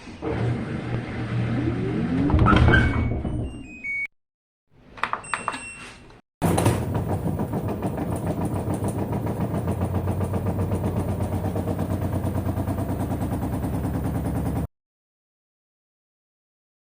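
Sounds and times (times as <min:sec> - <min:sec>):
washing machine hum: 0:00.0 - 0:02.5, 0:06.4 - 0:14.7
washing machine drum knocking: 0:06.4 - 0:14.7.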